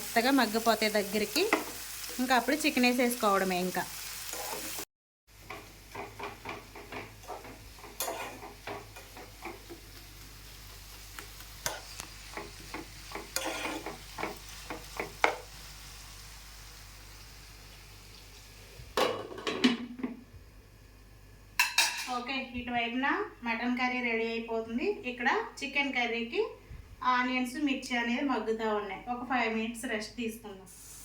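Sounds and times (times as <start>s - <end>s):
faint sizzle: 0.0s - 31.0s
spoon scraping against pan: 4.2s - 4.8s, 5.4s - 9.8s, 10.9s - 15.6s.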